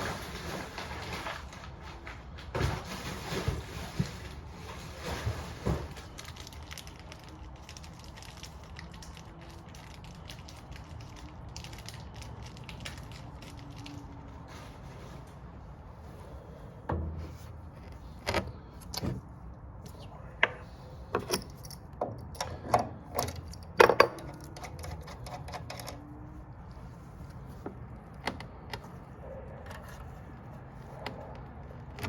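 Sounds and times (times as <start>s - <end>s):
metal parts knocking: 21.2s - 26.0s.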